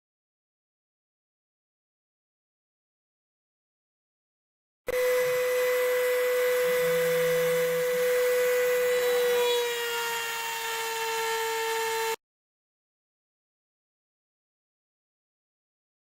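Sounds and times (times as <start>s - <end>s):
spindle motor whining: 4.9s - 12.2s.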